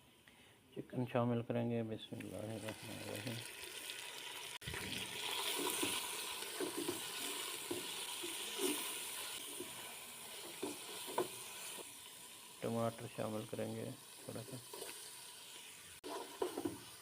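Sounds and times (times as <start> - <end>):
chicken sizzling in oil: 2.3 - 17.0
stirring knocks in pan: 5.5 - 9.8, 10.4 - 11.9, 16.0 - 17.0.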